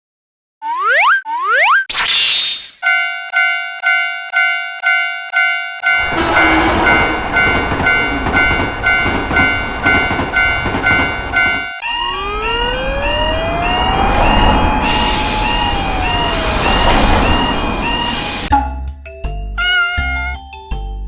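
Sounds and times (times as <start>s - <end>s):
police siren winding up: 0.6s - 3.4s, 11.8s - 18.5s
railroad crossing bell ringing: 2.8s - 18.5s
train passing rush: 6.0s - 18.5s.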